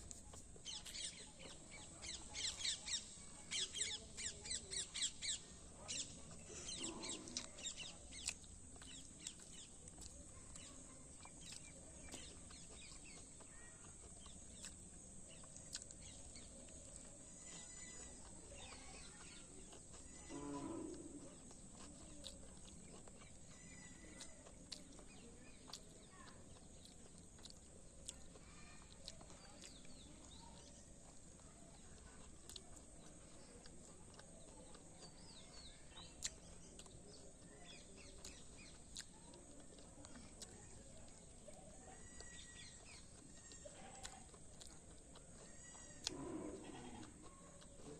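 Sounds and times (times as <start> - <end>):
faint bird chirps: 0.2 - 47.9
low animal call: 6.5 - 7.6, 20.1 - 21.5, 45.4 - 47.3.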